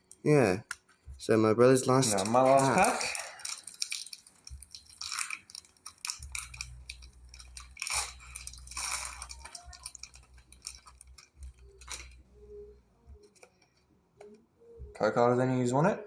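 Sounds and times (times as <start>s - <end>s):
foil wrapper crinkling and tearing: 1.6s - 12.4s.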